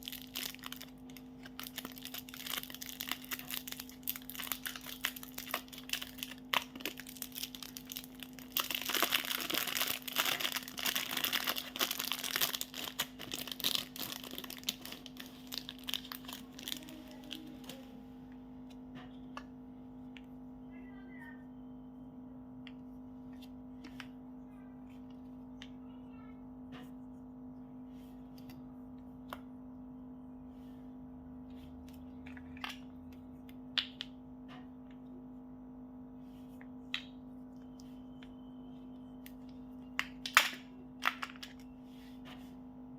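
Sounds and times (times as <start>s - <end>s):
chocolate wrapper crinkling: 0.0s - 17.9s.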